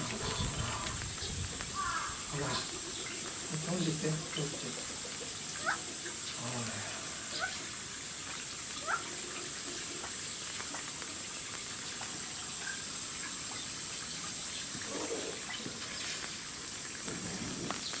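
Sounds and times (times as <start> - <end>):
water rushing: 0.0 - 18.0.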